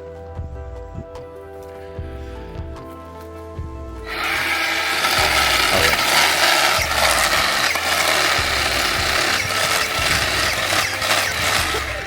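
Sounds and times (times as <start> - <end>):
faint background music: 0.0 - 12.0
chainsaw cutting wood: 4.1 - 12.0.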